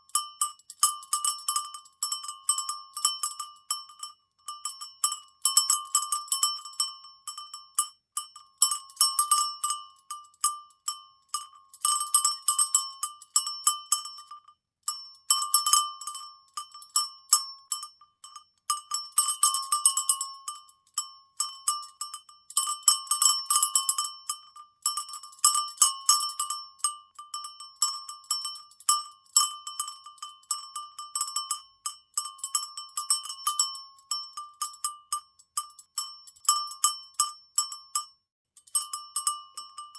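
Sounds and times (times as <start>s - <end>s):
cowbell clanking: 21.0s - 39.9s.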